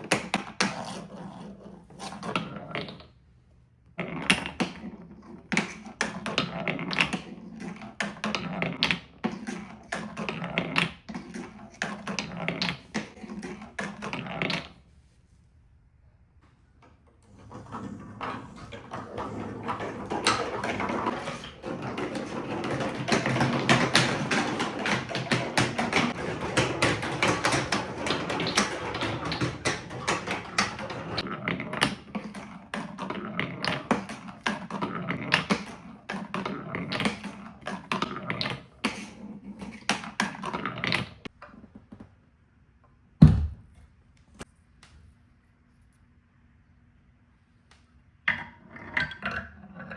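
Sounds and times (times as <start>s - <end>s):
marbles rattling down plastic track: 18.5s - 34.0s.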